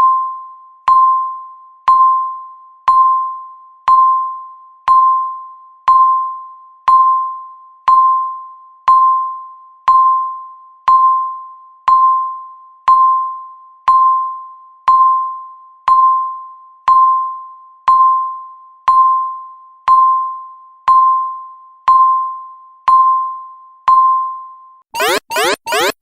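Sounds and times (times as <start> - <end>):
countdown timer beeping: 25.0 - 26.0.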